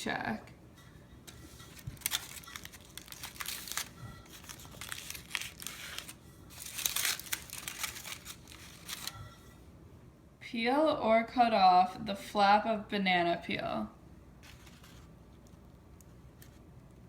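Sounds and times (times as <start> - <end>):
aluminum foil crinkling: 1.3 - 9.5, 14.4 - 15.2.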